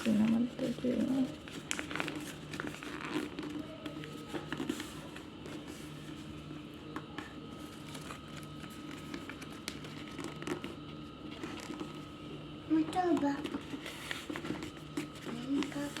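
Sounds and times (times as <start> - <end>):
paper rustling and crinkling: 0.0 - 12.2, 12.8 - 16.0.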